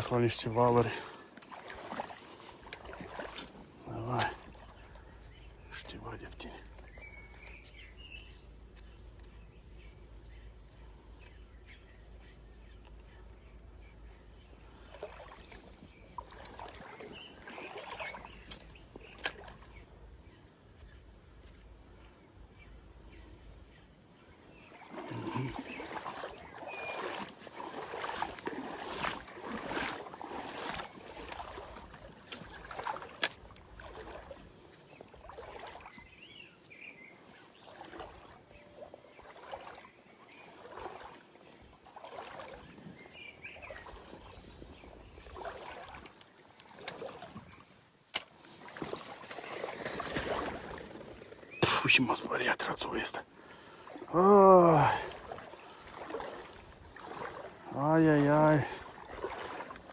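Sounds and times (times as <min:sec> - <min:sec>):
river water splashing: 0:00.0 - 0:59.9.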